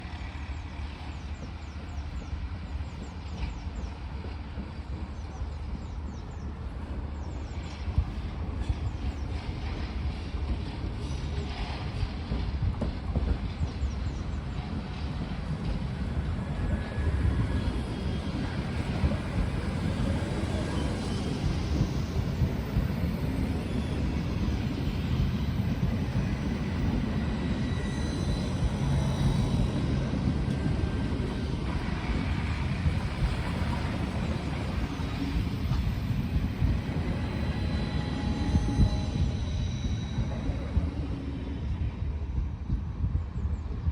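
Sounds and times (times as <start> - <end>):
train wheels rumbling on rails: 0.0 - 43.9.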